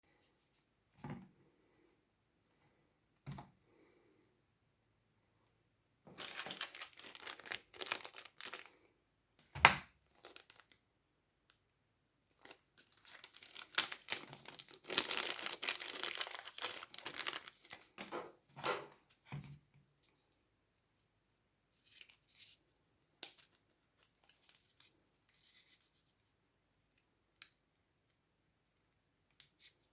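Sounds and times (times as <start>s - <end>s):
crinkling and tearing handling: 6.1s - 8.8s, 10.1s - 10.8s, 12.3s - 18.2s.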